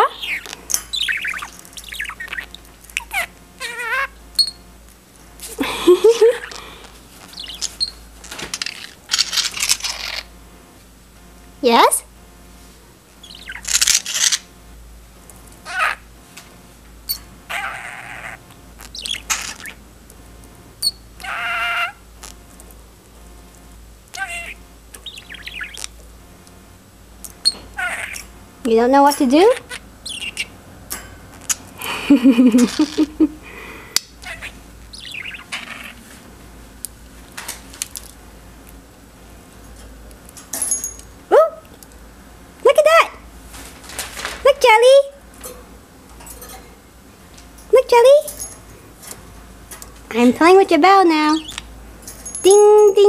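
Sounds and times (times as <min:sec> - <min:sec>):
budgerigar chirping: 0:00.0 - 0:04.6, 0:07.3 - 0:08.0, 0:08.6 - 0:10.3, 0:13.2 - 0:14.4, 0:17.1 - 0:19.8, 0:20.8 - 0:22.0, 0:24.2 - 0:25.9, 0:27.4 - 0:28.3, 0:29.4 - 0:30.6, 0:34.2 - 0:36.0, 0:51.3 - 0:51.7.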